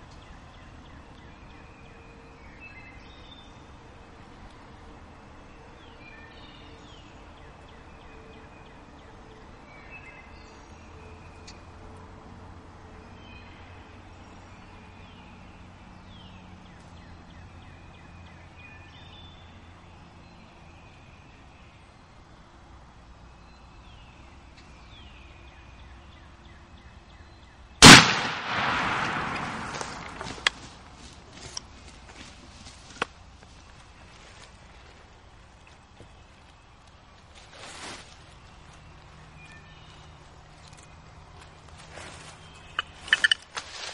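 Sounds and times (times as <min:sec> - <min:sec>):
faint birdsong: 0:00.0 - 0:43.9
faint outdoor hiss: 0:00.0 - 0:43.9
songbirds chirping: 0:00.0 - 0:43.9
shotgun blast with echo: 0:27.8 - 0:30.2.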